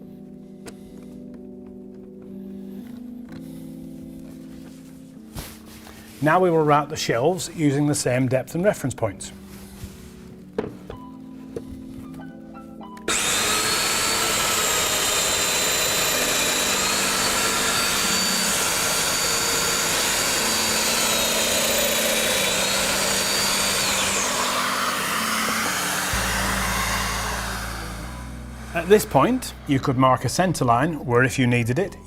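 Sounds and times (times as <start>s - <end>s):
joiner motor whine: 13.1s - 31.0s.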